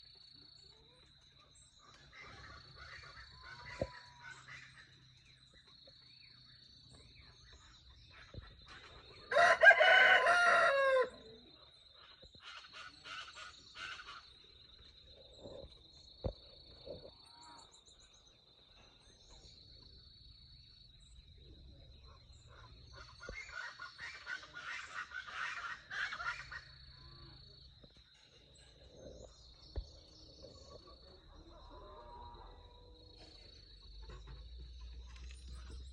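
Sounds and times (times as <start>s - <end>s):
quiet bird calls: 0.0s - 9.9s, 10.9s - 35.9s
rooster crowing: 9.3s - 11.3s.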